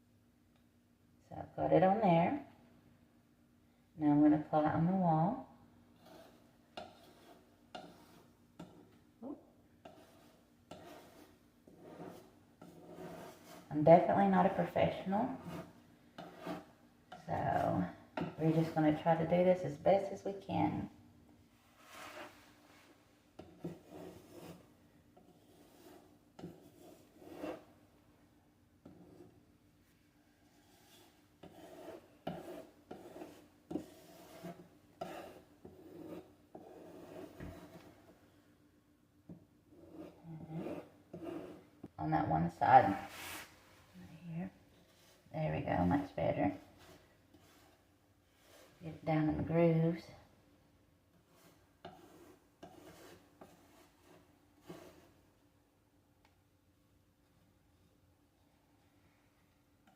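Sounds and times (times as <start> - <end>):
scraping and rubbing: 6.0 - 20.2, 21.6 - 27.8, 30.4 - 38.2, 39.7 - 41.7, 42.5 - 50.0, 51.1 - 55.2.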